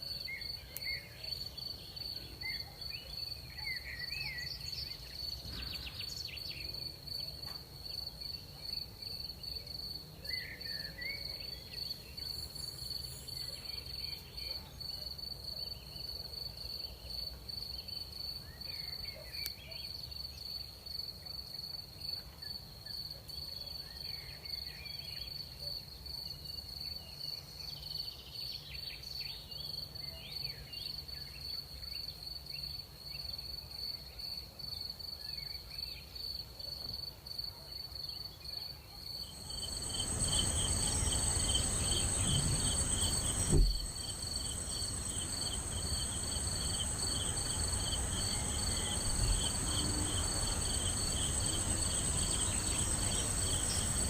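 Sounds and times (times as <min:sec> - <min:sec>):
crickets chirping: 0:00.0 - 0:19.2, 0:38.6 - 0:54.0
louder insect calls: 0:39.2 - 0:54.0
soft rushing noise: 0:39.4 - 0:54.0
short sharp thump: 0:42.2 - 0:44.0.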